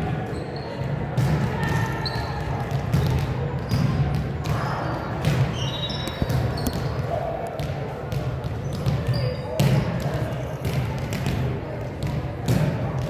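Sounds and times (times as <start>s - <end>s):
basketballs bouncing on gym floor: 0.8s - 13.0s
short high squeaks: 5.5s - 6.9s.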